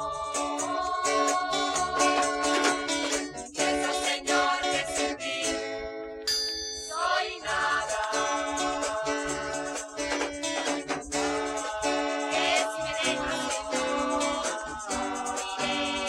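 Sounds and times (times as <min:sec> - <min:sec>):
steady beat: 0:00.0 - 0:04.2, 0:07.0 - 0:16.0
gospel song with singing: 0:00.0 - 0:05.9, 0:06.9 - 0:16.0
plucked strings: 0:08.0 - 0:16.0.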